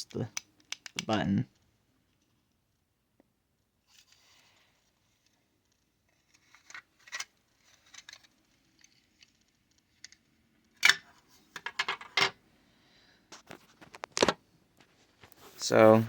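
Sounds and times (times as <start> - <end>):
plastic parts clicking: 0.1 - 1.1, 6.2 - 11.0
plastic parts clattering: 6.2 - 12.4.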